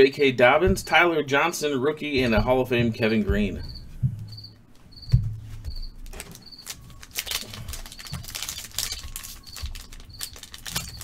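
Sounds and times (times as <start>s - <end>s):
low thump: 0.6s - 1.0s, 2.2s - 5.4s
cricket chirping: 3.1s - 11.0s
trading cards rustling: 5.4s - 11.0s.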